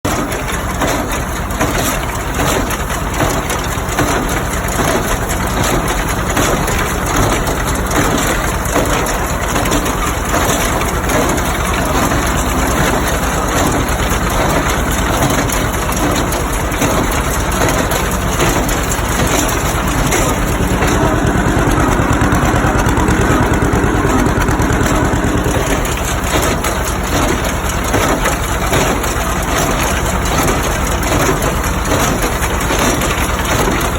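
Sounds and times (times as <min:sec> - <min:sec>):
baler clattering and crunching: 0:00.0 - 0:33.9
tractor engine running under load: 0:00.0 - 0:33.9.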